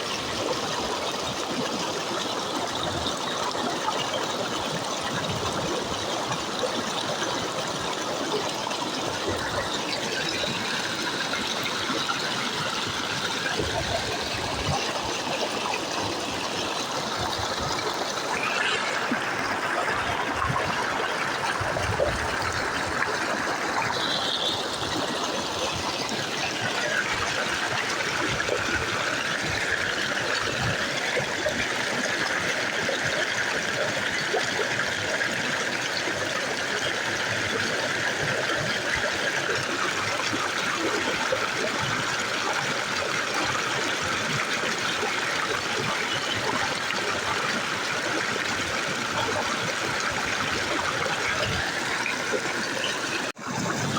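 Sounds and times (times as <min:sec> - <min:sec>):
floodwater rushing: 0:05.0 - 0:36.3.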